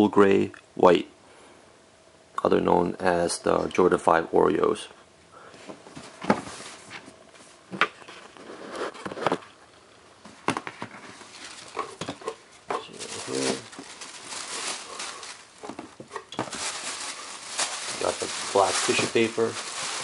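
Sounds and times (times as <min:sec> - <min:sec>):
paper rustling: 0:10.6 - 0:20.0.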